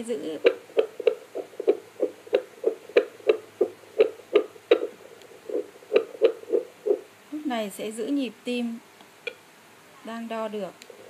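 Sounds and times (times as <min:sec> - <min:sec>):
fetal doppler heartbeat: 0:00.0 - 0:07.1.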